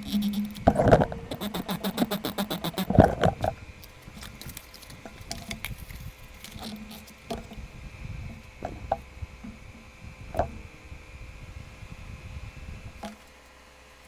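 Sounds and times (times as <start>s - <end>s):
faint steady whine: 0.0s - 14.0s
packaging taps clicks and rustles: 2.9s - 7.0s.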